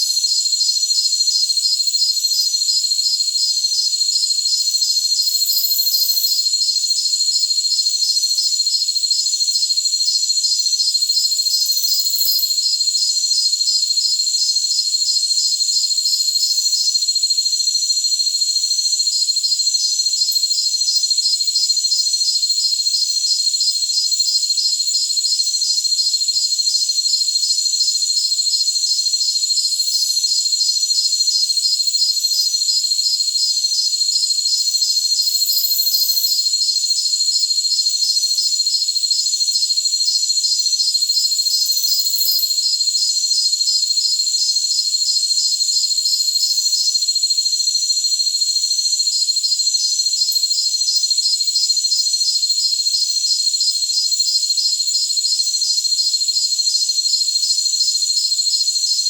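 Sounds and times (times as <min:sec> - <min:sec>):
high-pitched cricket trill: 0:00.0 - 0:59.0
insect chirping in quick pulses: 0:35.2 - 0:36.5, 0:41.2 - 0:42.7.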